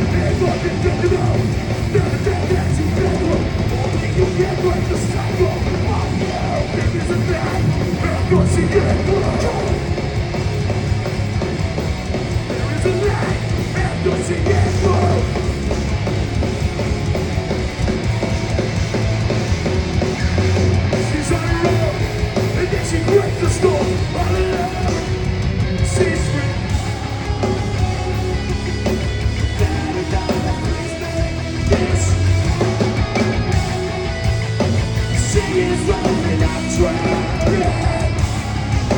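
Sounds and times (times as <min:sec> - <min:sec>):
shouted vocals: 0:00.0 - 0:10.0, 0:12.4 - 0:15.5
bass guitar: 0:00.0 - 0:38.9
distorted guitars: 0:00.0 - 0:38.9
pounding drums: 0:00.0 - 0:38.9.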